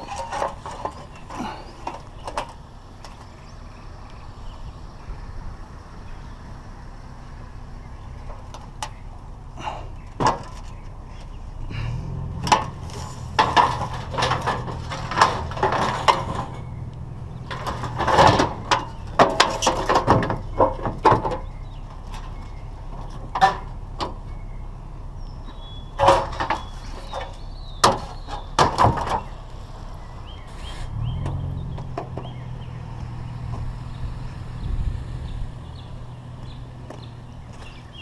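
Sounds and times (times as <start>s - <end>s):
scrap metal clanking and banging: 0.0s - 3.3s, 10.2s - 24.3s, 25.9s - 29.6s.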